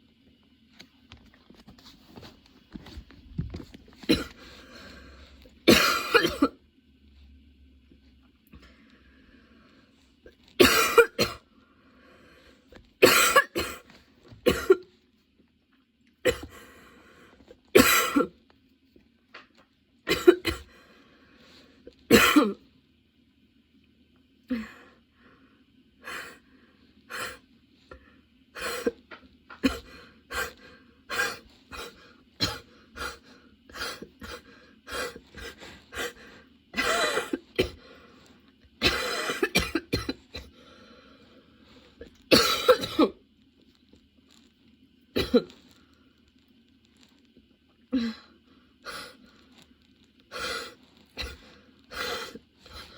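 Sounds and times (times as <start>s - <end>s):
woman coughing: 4.0s - 4.4s, 5.6s - 6.6s, 10.6s - 11.5s, 13.0s - 14.9s, 16.2s - 16.6s, 17.8s - 18.4s, 20.1s - 20.7s, 22.1s - 22.6s, 28.7s - 30.4s, 31.1s - 33.2s, 36.8s - 37.8s, 38.8s - 40.5s, 42.3s - 43.2s, 45.1s - 45.6s.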